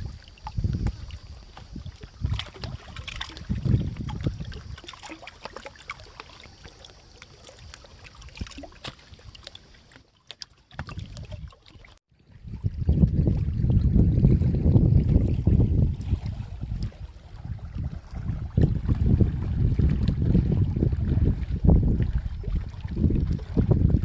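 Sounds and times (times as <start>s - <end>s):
wind buffeting microphone: 0.0s - 5.0s, 12.2s - 24.0s
river water trickling: 0.0s - 24.0s.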